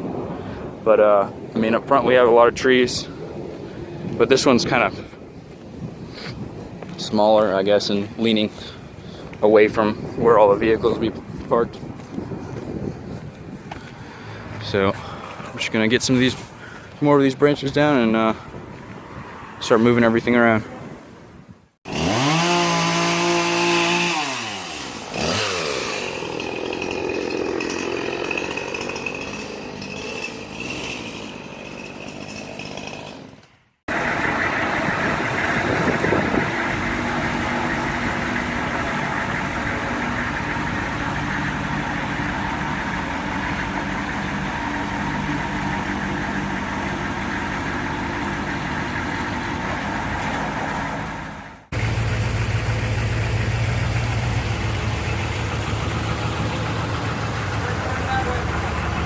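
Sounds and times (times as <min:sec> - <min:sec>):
chainsaw revving and cutting: 0:21.9 - 0:33.5
steady engine sound: 0:21.9 - 0:59.0.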